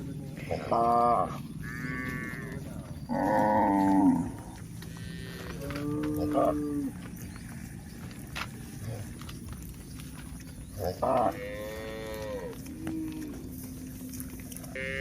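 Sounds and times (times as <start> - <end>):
cattle mooing: 0.4 - 7.0, 10.8 - 13.7, 14.5 - 15.0.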